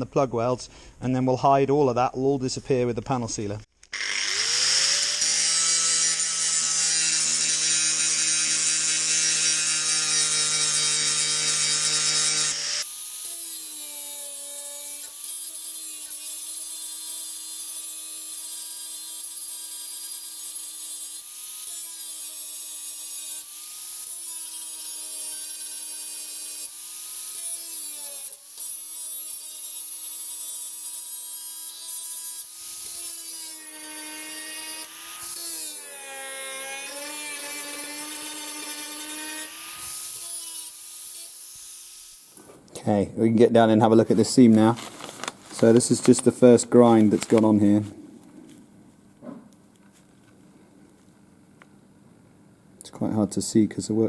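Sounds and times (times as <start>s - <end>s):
angle grinder grinding metal: 3.8s - 42.4s.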